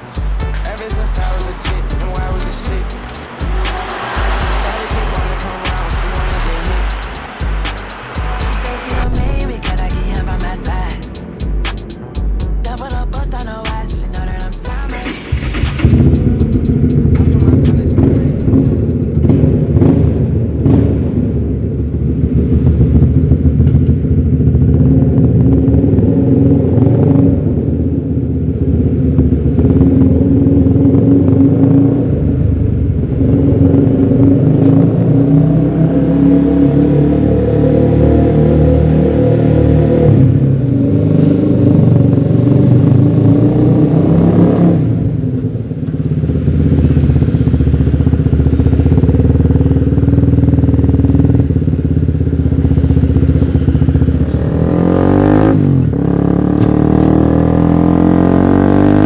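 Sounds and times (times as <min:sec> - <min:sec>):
motorcycle engine accelerating: 0:00.0 - 0:59.0.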